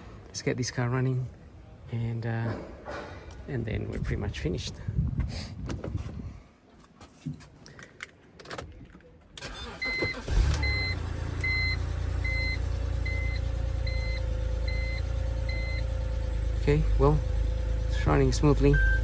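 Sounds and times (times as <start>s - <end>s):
car engine cranking and idling: 9.4s - 19.0s
dashboard warning chime beeping: 9.7s - 16.0s, 18.6s - 19.0s.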